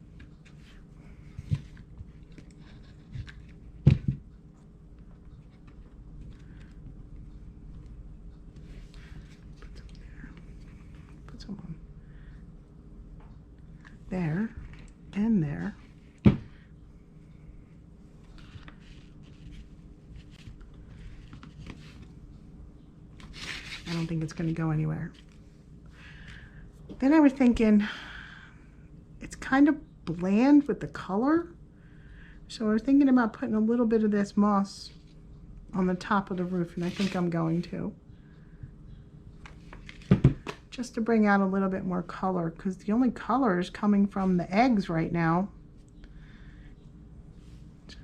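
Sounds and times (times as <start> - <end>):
blocks rustling on a tabletop: 36.7 - 37.3.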